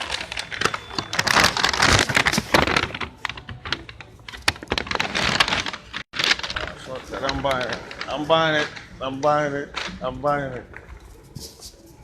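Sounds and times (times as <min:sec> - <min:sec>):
packages handled with clicks and rustles: 0:00.0 - 0:12.0.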